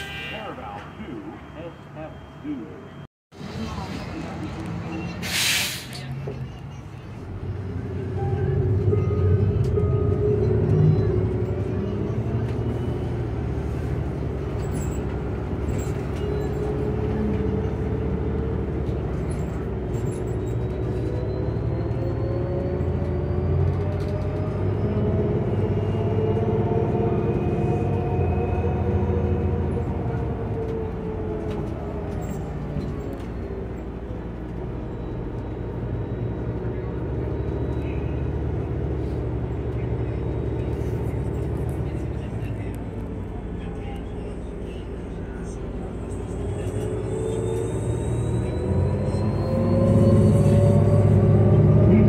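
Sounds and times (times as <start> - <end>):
bus drivetrain rumble: 0.0 - 52.0
rising drivetrain whine: 45.4 - 52.0.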